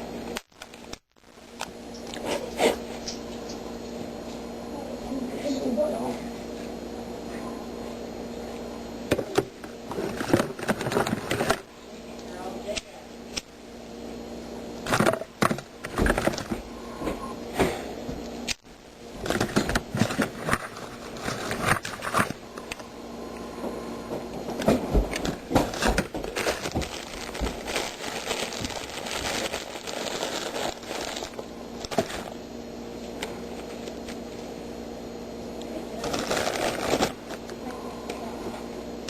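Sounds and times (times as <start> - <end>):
faint steady hum: 0.0 - 39.0
cabinets being rummaged through: 9.2 - 11.7, 14.8 - 16.6, 19.2 - 22.4, 24.4 - 32.3.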